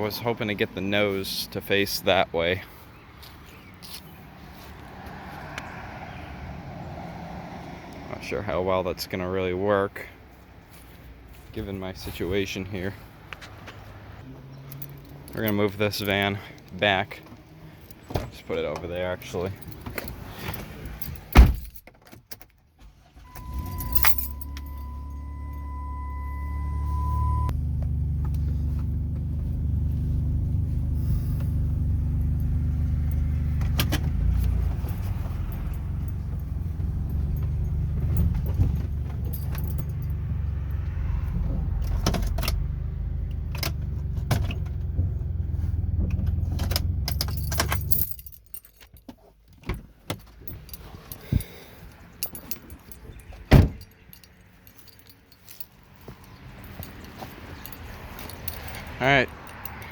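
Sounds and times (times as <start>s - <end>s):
van engine running: 23.1s - 48.6s
beeping chime: 23.3s - 27.5s.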